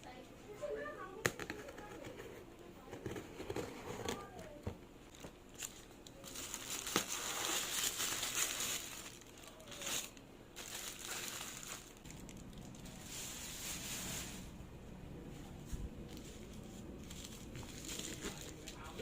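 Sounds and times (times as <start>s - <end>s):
packaging crinkling and rustling: 5.1s - 14.6s, 15.6s - 19.0s.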